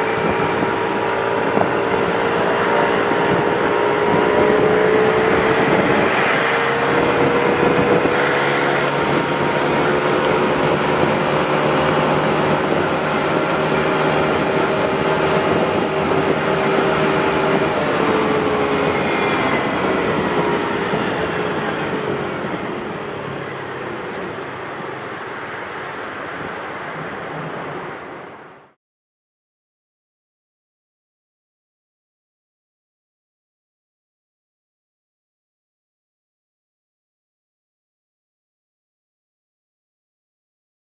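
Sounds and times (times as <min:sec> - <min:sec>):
scooter engine running: 0:00.0 - 0:24.0.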